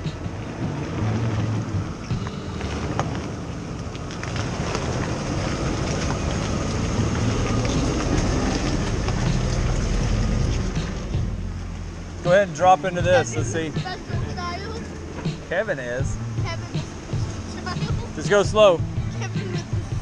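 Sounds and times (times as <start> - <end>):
truck engine rumbling: 0.0 - 20.0.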